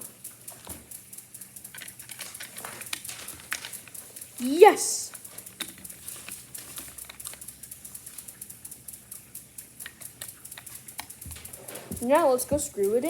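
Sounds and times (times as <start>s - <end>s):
batteries and plastic timer clicking: 0.0s - 13.0s.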